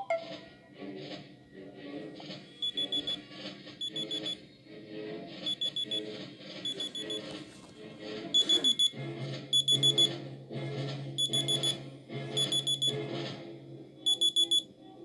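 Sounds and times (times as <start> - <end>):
soft melodic backing: 0.0 - 0.4
high alarm beeps: 2.7 - 3.2, 3.8 - 4.4, 5.5 - 6.0, 9.6 - 10.1, 11.2 - 11.8, 12.4 - 13.0, 14.1 - 14.6.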